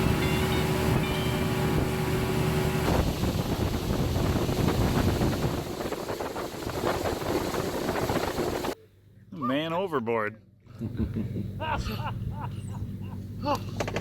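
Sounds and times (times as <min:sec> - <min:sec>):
outboard motor humming: 0:00.0 - 0:08.8
rushing water: 0:00.0 - 0:08.8
wind buffeting microphone: 0:02.7 - 0:08.8.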